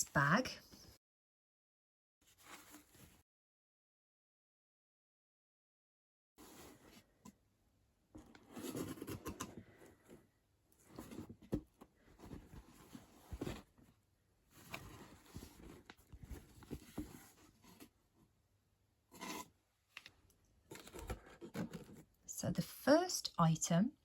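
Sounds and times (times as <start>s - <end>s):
rustling and scraping of packaging: 2.3s - 3.2s, 6.4s - 7.1s, 8.2s - 18.0s, 20.7s - 22.2s.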